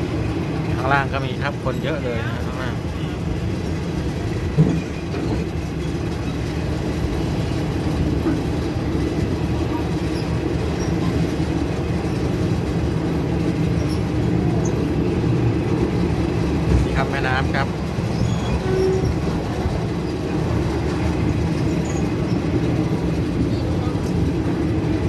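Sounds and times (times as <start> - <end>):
train wheels rumbling on rails: 0.0 - 25.0.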